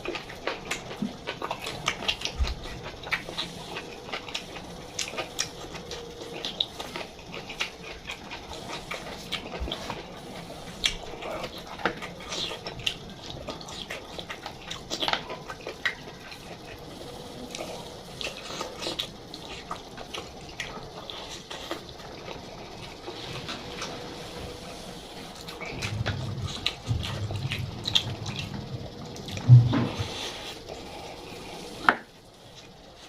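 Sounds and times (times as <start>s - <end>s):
person chewing: 0.0s - 10.0s.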